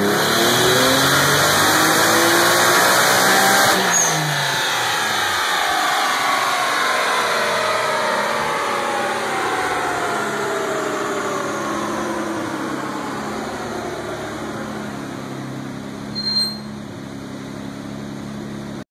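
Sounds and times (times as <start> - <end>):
car engine winding down: 0.0 - 18.8
high-pitched chirp: 16.1 - 16.8.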